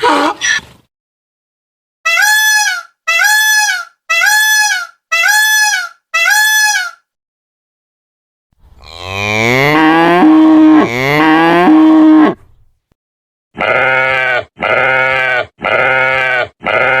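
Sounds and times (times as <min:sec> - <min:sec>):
short bleats: 0:13.6 - 0:17.0.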